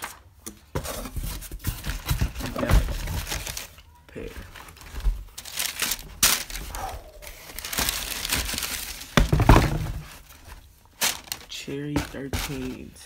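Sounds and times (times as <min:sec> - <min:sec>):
paper crinkling and rustling: 0:00.0 - 0:13.0
heavy thump: 0:09.2 - 0:10.2.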